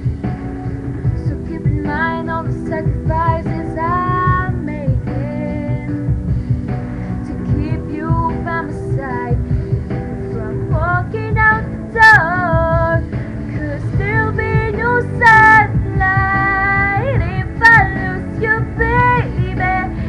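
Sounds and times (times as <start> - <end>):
backing track music: 0.0 - 20.0
woman singing pop ballad: 1.0 - 20.0.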